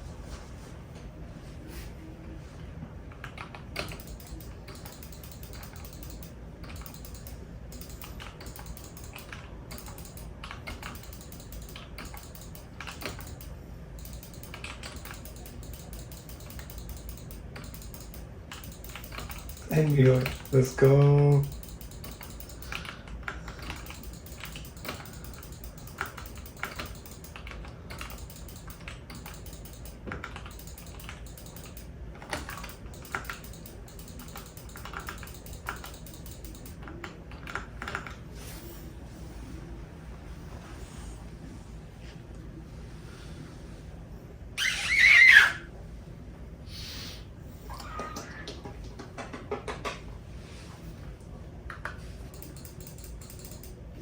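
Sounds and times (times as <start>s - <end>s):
typing on computer keyboard: 3.1s - 38.2s, 51.7s - 54.0s.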